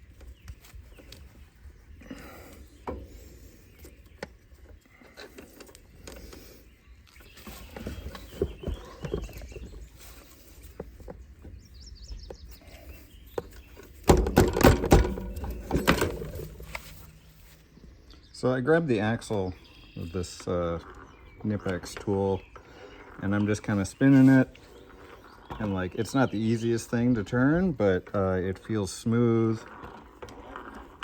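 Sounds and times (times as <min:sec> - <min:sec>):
clicks and knocks of metal tools: 0:13.8 - 0:17.4.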